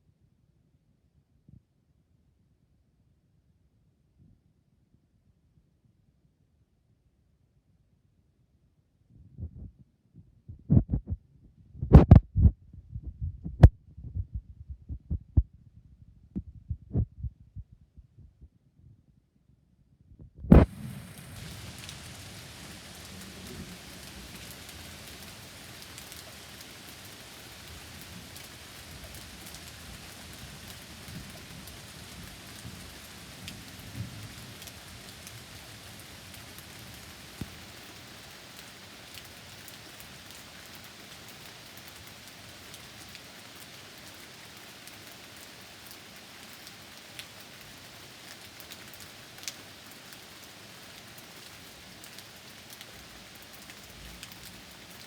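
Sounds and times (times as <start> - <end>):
steady rain falling: 20.5 - 55.0
distant thunder rumbles: 20.6 - 25.9.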